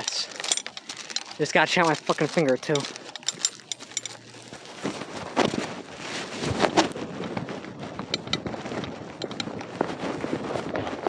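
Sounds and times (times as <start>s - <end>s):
wind buffeting microphone: 5.8s - 11.0s
scattered knocks or clicks: 7.3s - 9.6s.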